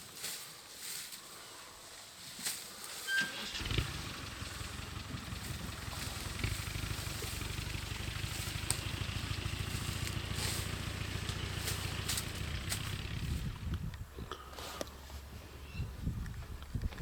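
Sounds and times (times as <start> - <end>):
vehicle engine starting and idling: 3.1 - 15.4.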